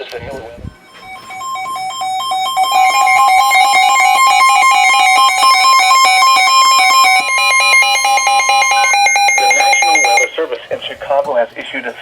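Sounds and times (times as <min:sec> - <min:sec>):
weather radio alert beeping: 0:00.8 - 0:10.4.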